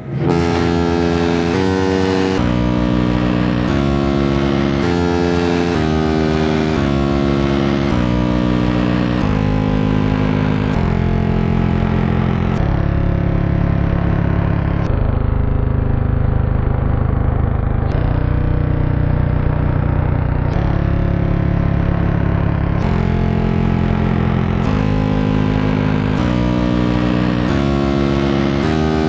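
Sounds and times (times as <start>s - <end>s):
alarm clock buzzing: 0.0s - 12.6s.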